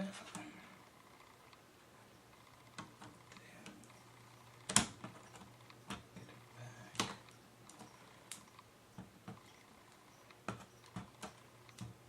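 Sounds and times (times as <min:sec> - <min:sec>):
clicks and taps of plastic parts: 0:10.3 - 0:12.0.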